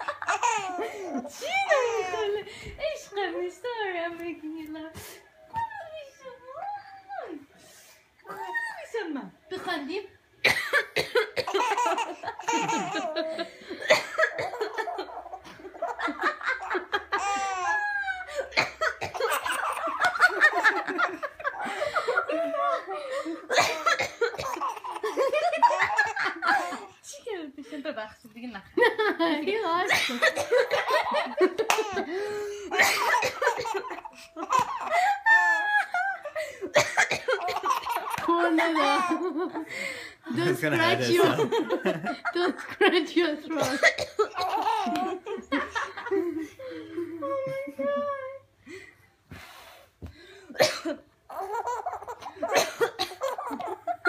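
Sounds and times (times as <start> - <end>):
baby laughing: 0.0 - 2.4, 11.5 - 18.4, 19.1 - 21.6, 23.5 - 27.0, 32.7 - 36.0, 37.0 - 39.4, 43.6 - 45.2, 51.3 - 53.9
woman coughing: 10.4 - 13.1, 13.8 - 15.0, 18.4 - 20.0, 23.5 - 25.0, 29.8 - 31.0, 32.7 - 35.2, 36.7 - 39.2, 43.2 - 44.9, 50.6 - 51.0, 52.3 - 53.5.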